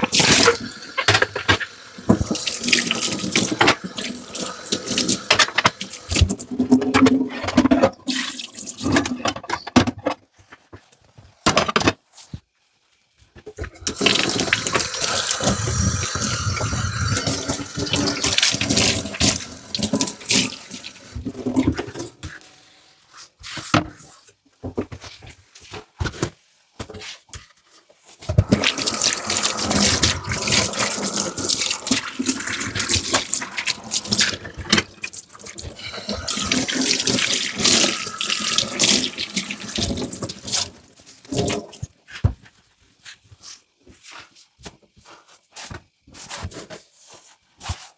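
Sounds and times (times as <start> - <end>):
tap running into sink: 0.0 - 7.2, 13.8 - 22.5, 28.4 - 41.8.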